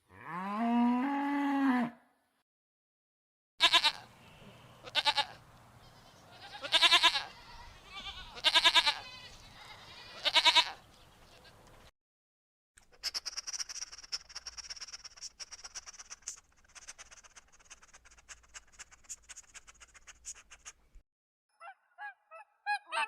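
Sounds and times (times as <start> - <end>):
farm animal bleat: 3.6 - 11.6
rapid high-pitched chirping and clicking: 13.0 - 20.8.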